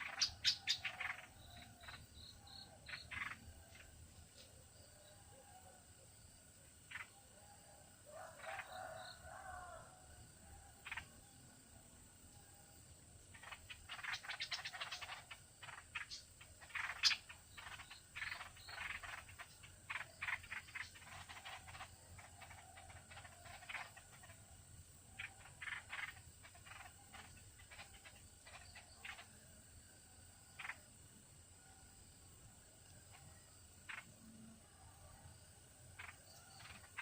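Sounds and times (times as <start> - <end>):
animal chattering calls: 0.0 - 2.0, 2.8 - 3.9, 6.9 - 7.1, 10.8 - 11.2, 13.3 - 24.5, 25.1 - 29.4, 30.6 - 30.8, 33.8 - 34.2, 36.0 - 37.0.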